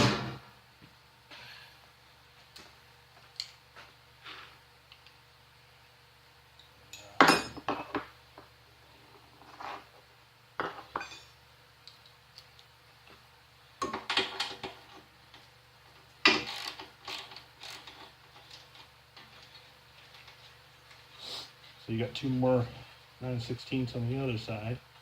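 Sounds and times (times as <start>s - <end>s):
metal tools clinking and clanking: 6.9s - 7.9s, 10.7s - 11.4s.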